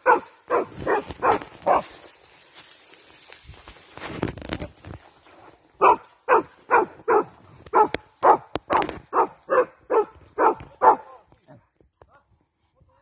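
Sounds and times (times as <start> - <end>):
dog barking: 0.0 - 1.9, 5.8 - 11.2.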